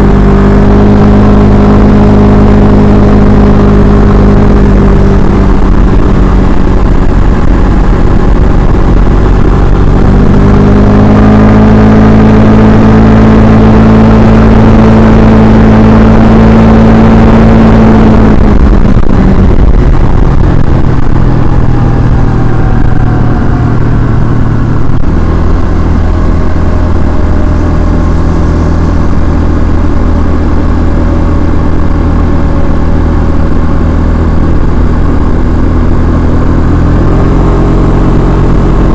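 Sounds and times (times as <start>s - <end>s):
scooter engine running: 0.0s - 38.9s.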